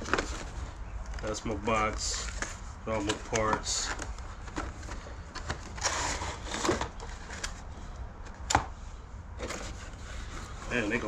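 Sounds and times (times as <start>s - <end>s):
packaging rustling and clicks: 0.0s - 7.7s.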